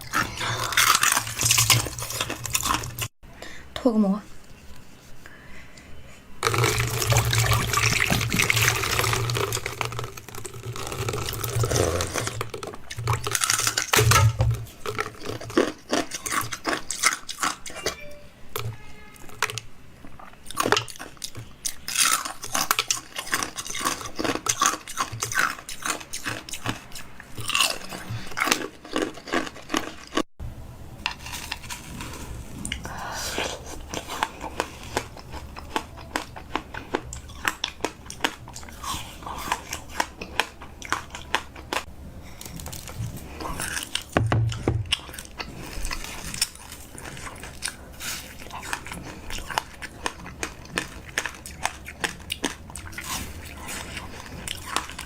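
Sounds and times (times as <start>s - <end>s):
wet chewing and crunching: 0.0s - 3.2s, 6.4s - 18.0s, 18.6s - 30.3s, 31.1s - 55.0s
liquid sounds: 6.4s - 15.5s.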